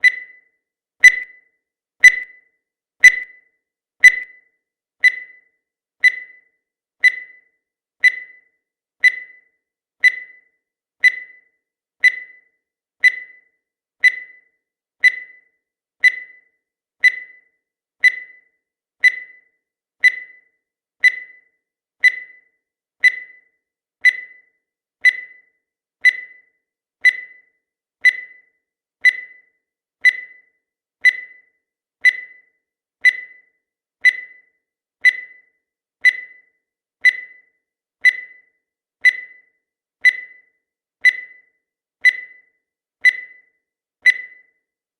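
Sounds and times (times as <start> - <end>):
short high beeps: 1.0 - 1.3, 2.0 - 2.3, 3.0 - 3.3, 4.0 - 4.3.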